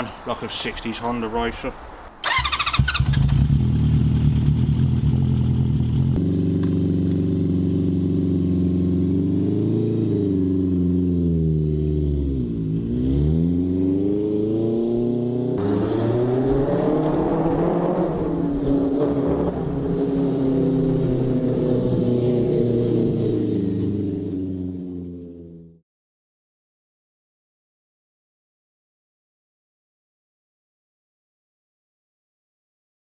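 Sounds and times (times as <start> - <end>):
motorcycle engine revving: 2.2 - 25.8.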